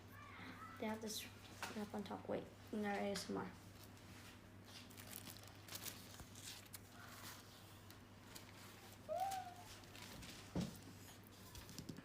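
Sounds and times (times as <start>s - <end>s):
packaging rustling: 4.7s - 12.0s.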